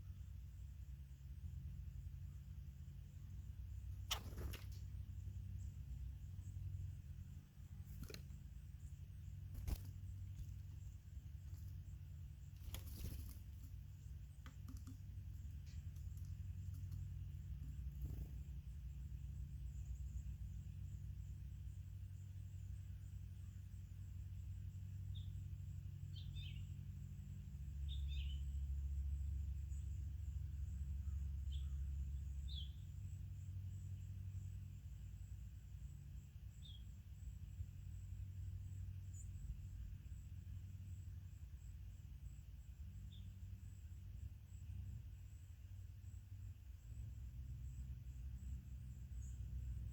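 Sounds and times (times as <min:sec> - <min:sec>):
low outdoor rumble: 0:00.0 - 0:49.9
songbird call notes: 0:03.1 - 0:41.7, 0:42.3 - 0:45.4, 0:46.8 - 0:49.9
birds tapping on feeder: 0:03.9 - 0:05.5, 0:07.7 - 0:18.5.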